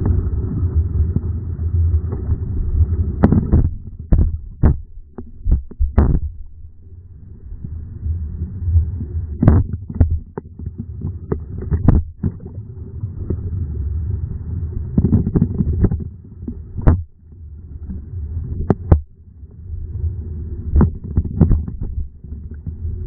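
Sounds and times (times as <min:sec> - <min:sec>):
muffled underwater rumbling: 0:00.0 - 0:23.0.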